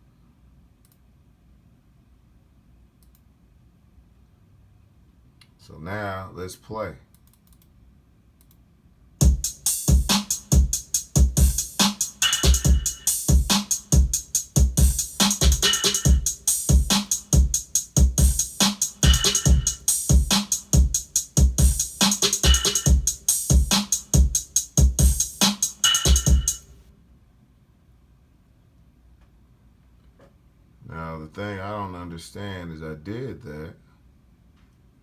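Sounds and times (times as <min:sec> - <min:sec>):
electronic drum beat: 0:09.2 - 0:26.7.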